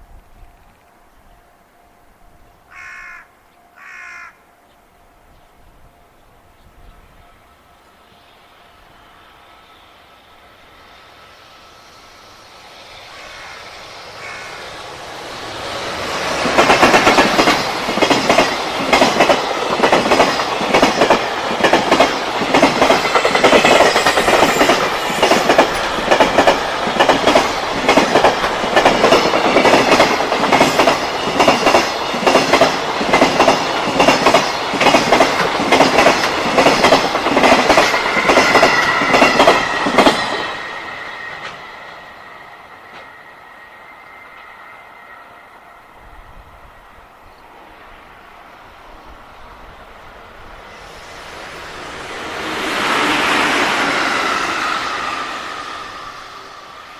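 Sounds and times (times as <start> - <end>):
wheels clacking over rail joints: 15.0 - 41.9.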